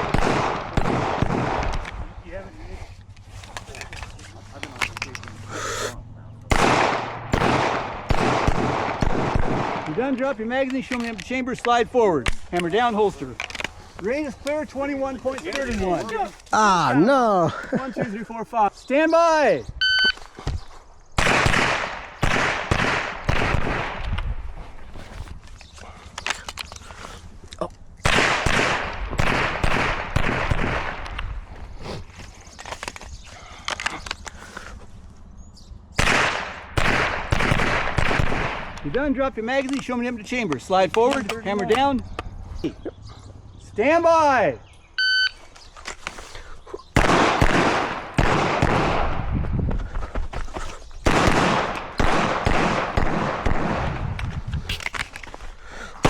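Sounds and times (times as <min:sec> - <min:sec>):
pistol shots: 0:00.0 - 0:02.1, 0:06.5 - 0:10.1, 0:21.2 - 0:24.2, 0:28.0 - 0:31.4, 0:36.0 - 0:38.9, 0:47.0 - 0:49.3, 0:51.0 - 0:54.2.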